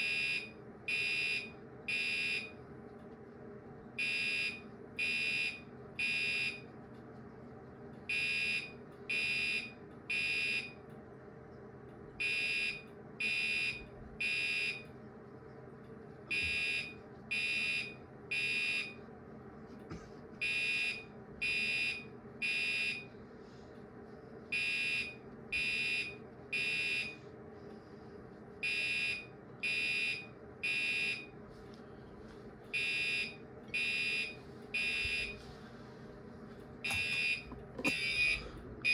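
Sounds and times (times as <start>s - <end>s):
fire alarm horn blasts: 0.0s - 2.6s, 4.0s - 6.6s, 8.1s - 10.8s, 12.2s - 14.9s, 16.3s - 19.0s, 20.4s - 23.1s, 24.5s - 27.2s, 28.6s - 31.4s, 32.7s - 35.4s, 36.8s - 38.9s.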